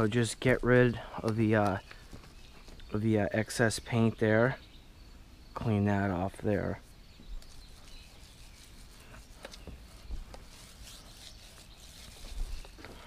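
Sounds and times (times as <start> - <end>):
light clicks of paint roller: 7.4 - 13.0
paint roller rubbing: 7.4 - 13.0.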